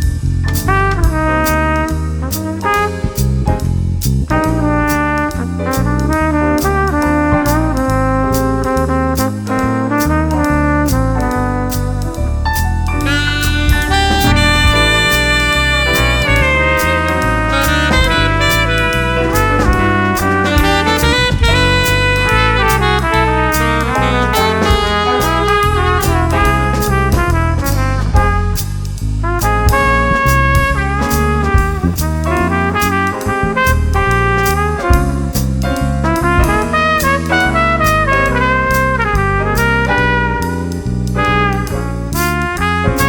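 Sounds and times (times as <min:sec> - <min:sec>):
stepping bass line: 0:00.0 - 0:43.0
trumpet: 0:00.6 - 0:03.7, 0:04.3 - 0:43.0
saxophone: 0:13.0 - 0:27.4, 0:31.5 - 0:35.1
drums with cymbal strokes: 0:31.1 - 0:35.9.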